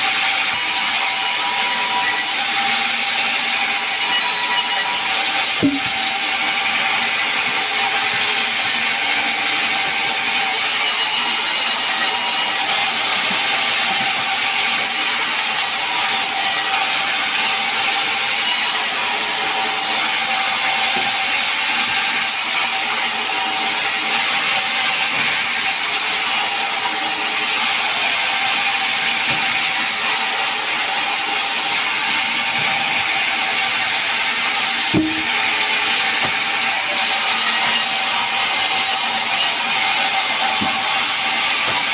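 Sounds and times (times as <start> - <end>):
saw cutting wood: 0.0 - 41.9
sharp knock: 5.6 - 6.0, 35.0 - 35.4.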